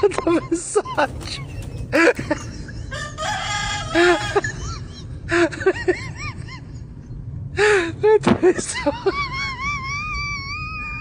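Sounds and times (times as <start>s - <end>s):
rooster crowing: 1.7s - 4.8s.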